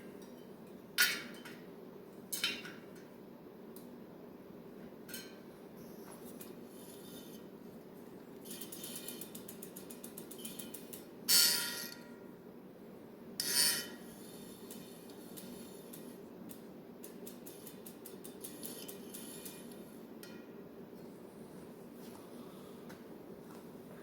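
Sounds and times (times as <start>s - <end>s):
bicycle wheel ticking: 8.4s - 11.0s
metallic rasps: 8.4s - 12.1s, 13.4s - 16.2s, 17.1s - 19.8s.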